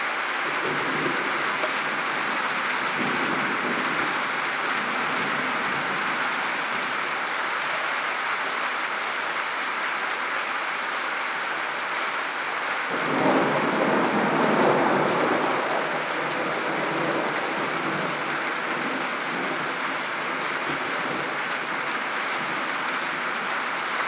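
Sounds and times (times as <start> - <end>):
heavy rain: 0.0 - 24.0
thunder rolling: 0.4 - 6.8, 12.9 - 22.5.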